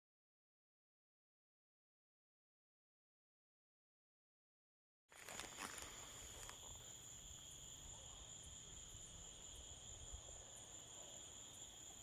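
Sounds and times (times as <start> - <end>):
crickets trilling: 5.1 - 12.0.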